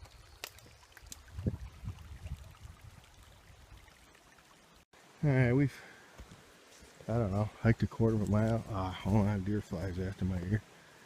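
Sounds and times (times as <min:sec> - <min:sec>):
creek flowing: 0:00.0 - 0:11.0.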